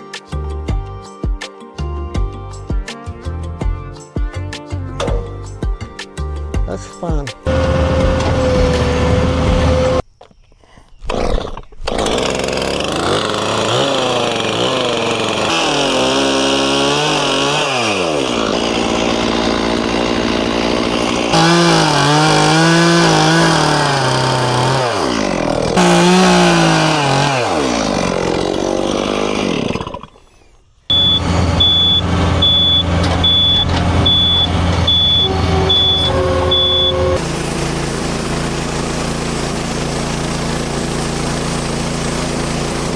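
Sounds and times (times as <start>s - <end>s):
sawmill gasoline engine running: 7.4s - 10.0s, 11.1s - 42.9s
high electronic beeping: 30.9s - 37.2s.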